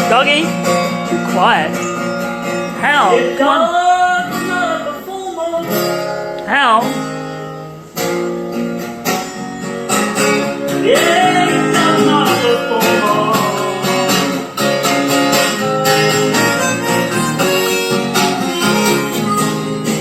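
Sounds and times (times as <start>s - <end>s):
acoustic guitar strumming: 0.0s - 20.0s
person singing: 2.8s - 6.8s, 10.7s - 14.6s.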